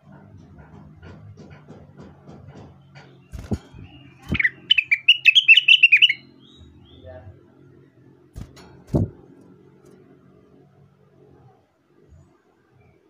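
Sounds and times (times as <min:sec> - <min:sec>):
songbird chirping: 0:02.7 - 0:08.3.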